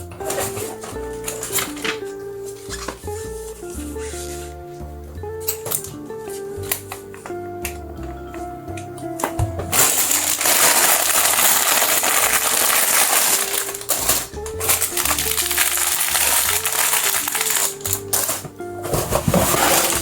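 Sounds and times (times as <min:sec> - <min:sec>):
packaging and plastic pieces rustling: 0:00.0 - 0:04.5, 0:09.1 - 0:20.0
background music: 0:00.0 - 0:20.0.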